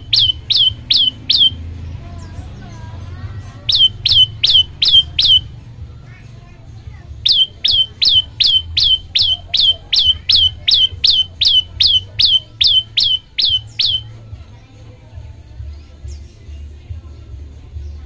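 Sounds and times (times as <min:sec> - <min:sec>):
bird calling sharp downward note: 0:00.0 - 0:01.6, 0:03.7 - 0:05.5, 0:07.2 - 0:14.1.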